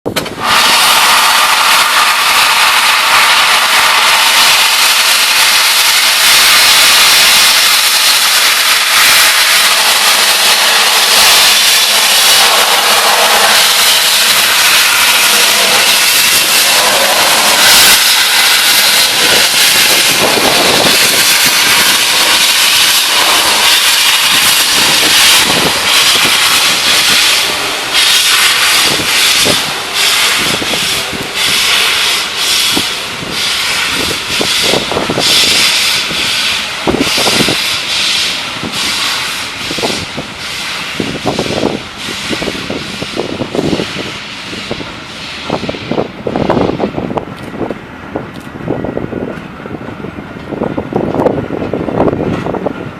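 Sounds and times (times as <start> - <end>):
steam locomotive hissing steam: 0.1 - 52.9.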